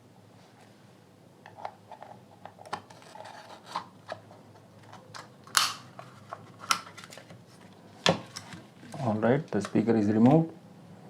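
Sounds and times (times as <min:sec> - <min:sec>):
plastic casing being pried apart: 0:04.9 - 0:07.2
sharp plastic snap: 0:05.2 - 0:06.0.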